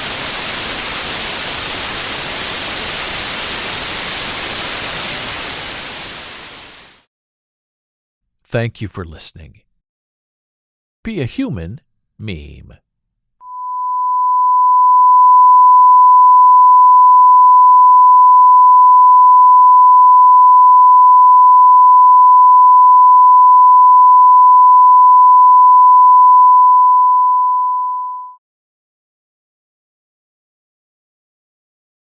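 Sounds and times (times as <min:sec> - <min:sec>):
sine-wave test tone: 0:13.4 - 0:28.4.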